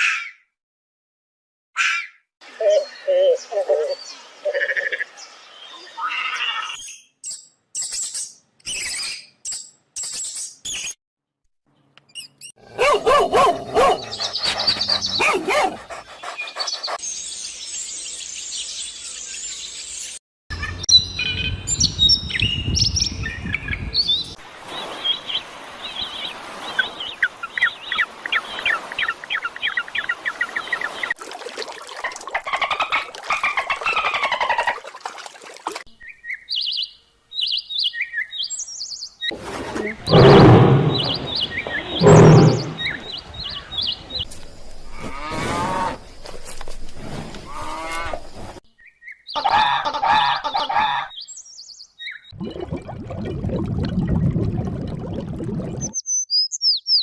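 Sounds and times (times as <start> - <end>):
birds chirping and calling: 1.8 - 10.9, 12.2 - 19.7, 36.2 - 44.3.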